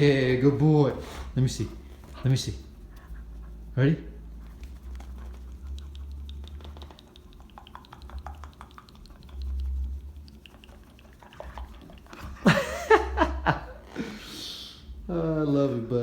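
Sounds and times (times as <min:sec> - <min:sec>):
dog claws clicking on floor: 0:04.5 - 0:12.4.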